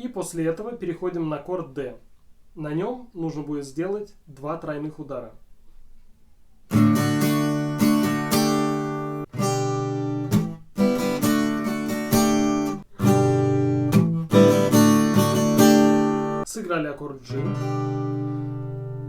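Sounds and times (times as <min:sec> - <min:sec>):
acoustic guitar strumming: 0:06.7 - 0:16.4, 0:17.3 - 0:19.0.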